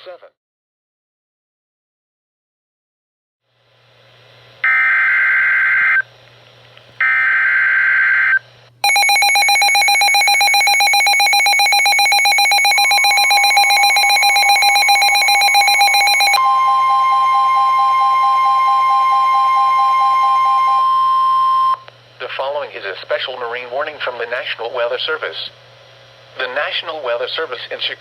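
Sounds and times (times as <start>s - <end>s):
continuous alert tone: 8.8s - 21.8s
two-note alert tone: 16.4s - 21.8s.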